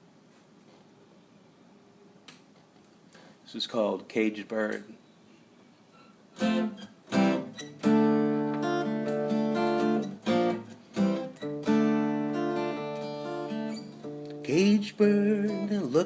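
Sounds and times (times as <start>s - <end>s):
acoustic guitar strumming: 6.3s - 16.0s.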